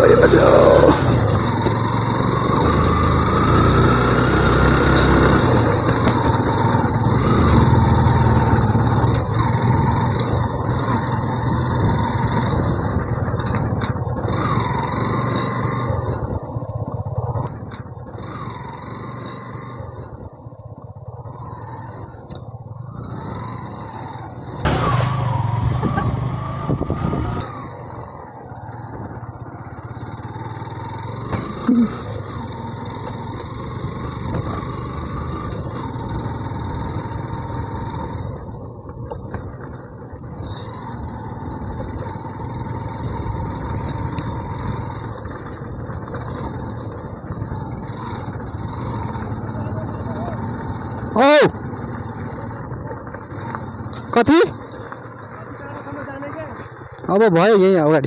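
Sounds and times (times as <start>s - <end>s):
loud rush of noise: 24.7s - 27.4s
motorcycle engine running: 24.7s - 27.4s.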